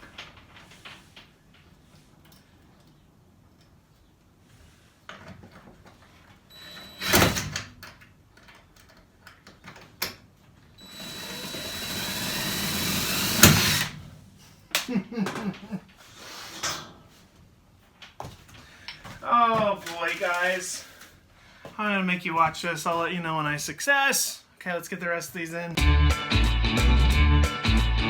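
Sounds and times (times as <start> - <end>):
power drill running: 6.6 - 7.5, 10.8 - 14.0.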